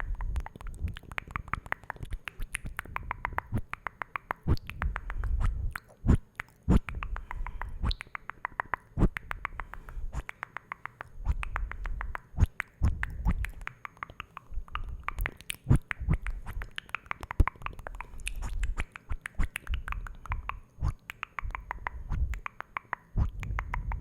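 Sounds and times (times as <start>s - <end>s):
wet mouth clicks and pops: 0.0s - 24.0s
soft low rumbles: 4.5s - 8.0s, 11.1s - 13.6s, 14.5s - 18.9s, 19.7s - 22.5s, 23.2s - 24.0s.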